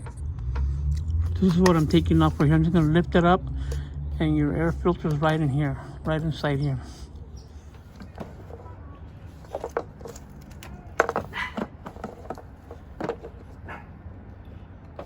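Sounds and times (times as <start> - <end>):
plastic clicks and knocks: 9.4 - 13.5.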